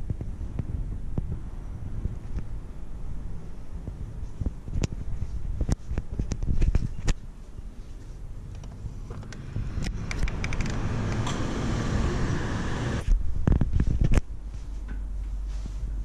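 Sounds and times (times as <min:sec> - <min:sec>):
low steady rumble: 0:00.0 - 0:06.6, 0:07.2 - 0:16.0
street traffic: 0:07.1 - 0:13.2
sharp clicks: 0:08.5 - 0:11.5.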